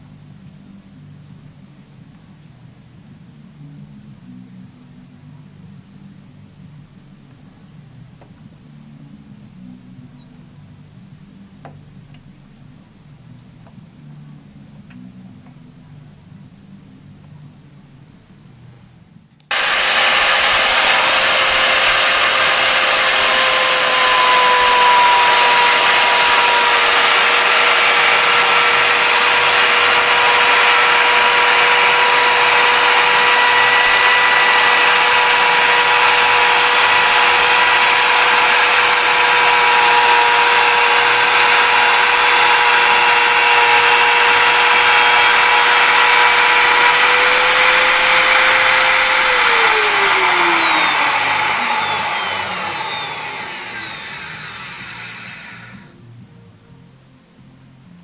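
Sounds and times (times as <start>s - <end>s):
wood router motor whining: 19.5s - 56.0s.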